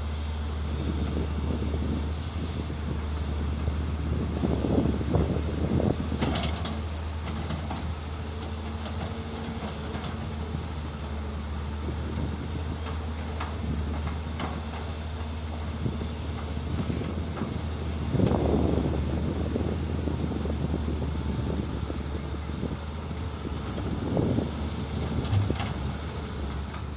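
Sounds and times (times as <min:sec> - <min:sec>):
diesel engine droning: 0:00.0 - 0:26.9.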